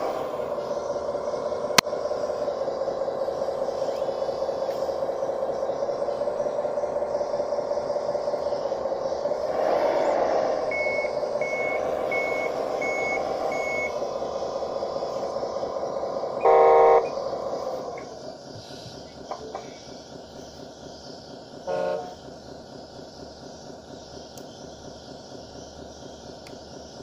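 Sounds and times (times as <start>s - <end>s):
model bulldozer running: 0.0s - 27.0s
reversing beeps: 10.7s - 14.0s
horn toot: 16.4s - 17.1s.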